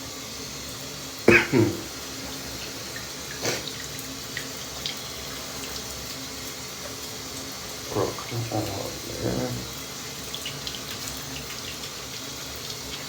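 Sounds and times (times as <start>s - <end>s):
shower water running: 0.0s - 13.0s
man sneezing: 1.3s - 1.9s.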